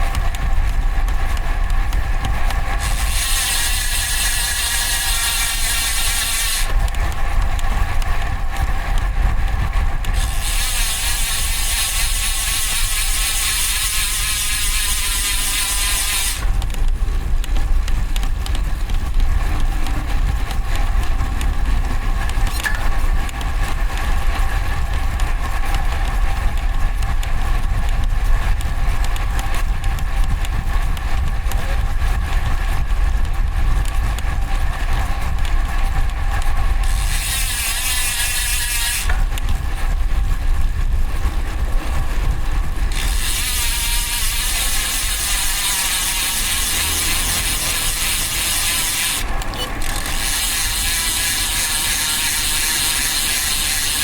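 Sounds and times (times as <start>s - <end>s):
road noise: 0.0s - 54.0s
wind rumbling on microphone: 0.0s - 54.0s
bicycle freehub ratcheting buzz: 0.1s - 54.0s.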